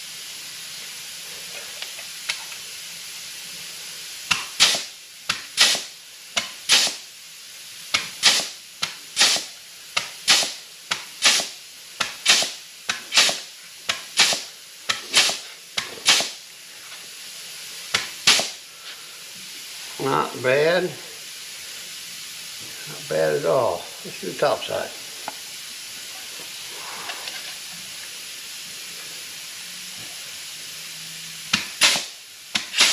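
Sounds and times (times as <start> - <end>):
steady background hiss: 0.0 - 32.9
flanging tool snapping and hissing: 4.3 - 7.1, 7.9 - 17.1, 17.9 - 18.9, 31.5 - 32.9.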